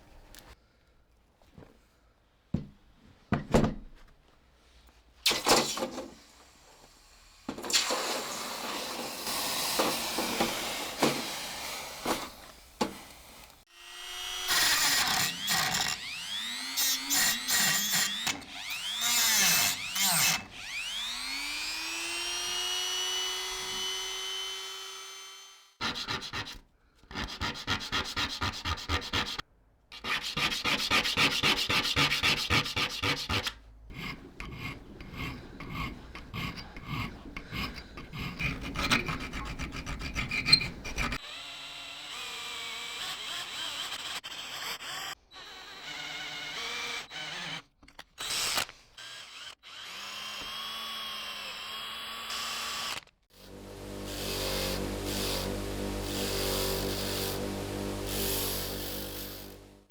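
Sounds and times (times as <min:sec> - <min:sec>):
small power tool motor whining: 0:07.7 - 0:25.8, 0:33.9 - 0:47.6, 0:48.2 - 0:59.9
hand filing strokes: 0:25.8 - 0:29.4, 0:30.0 - 0:41.2, 0:53.4 - 0:59.9
scraping: 0:33.9 - 0:41.2.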